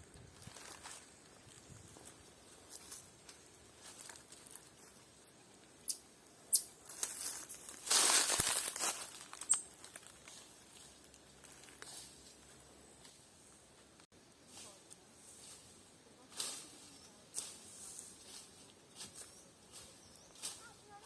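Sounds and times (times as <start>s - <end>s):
rustling in dry leaves: 0.0s - 5.7s, 6.8s - 21.0s.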